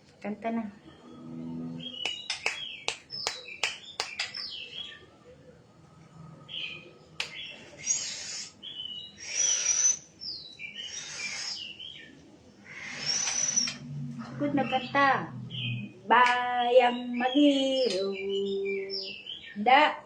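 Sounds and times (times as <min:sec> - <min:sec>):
harsh scratchy bird calls: 0:01.4 - 0:04.8, 0:07.2 - 0:13.9
bird singing clicking chirps: 0:02.0 - 0:04.6, 0:07.2 - 0:07.5, 0:17.8 - 0:18.2.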